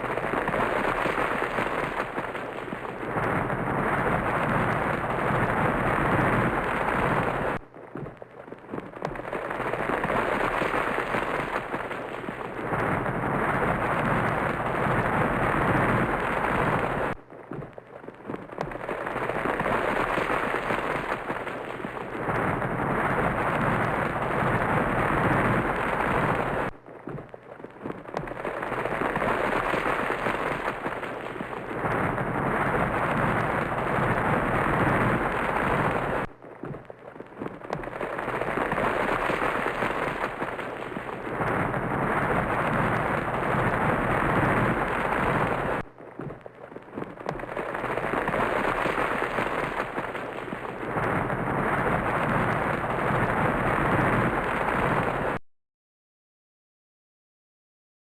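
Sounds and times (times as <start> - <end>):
crackling volcanic rumble: 0.0 - 55.4.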